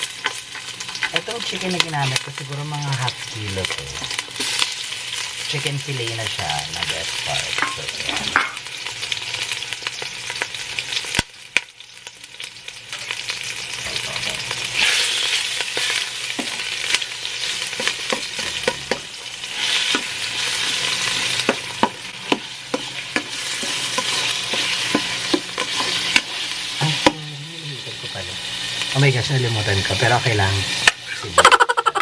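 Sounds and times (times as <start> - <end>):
chicken sizzling in oil: 0.0 - 32.0
utensil scraping a pan: 14.2 - 27.1.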